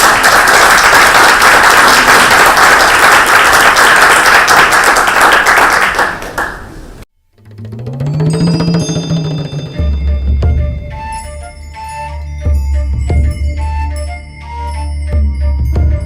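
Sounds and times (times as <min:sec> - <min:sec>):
audience applauding: 0:00.0 - 0:07.0
music: 0:07.3 - 0:16.0.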